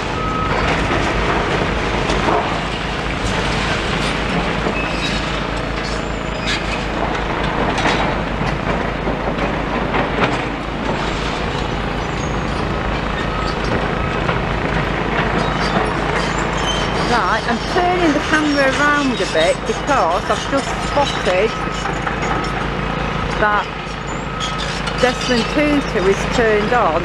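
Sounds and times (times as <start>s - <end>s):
excavator engine rumbling: 0.0s - 27.0s
debris knocking and clattering: 0.5s - 17.1s.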